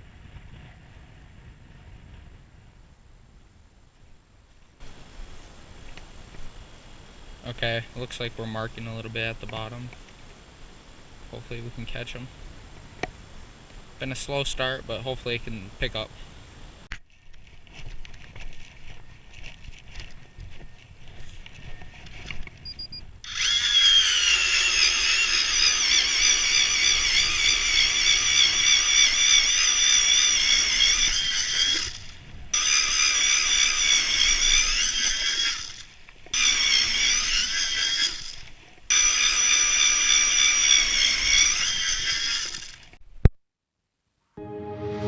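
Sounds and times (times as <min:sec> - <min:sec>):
power ice auger drilling: 0:23.2 - 0:43.0.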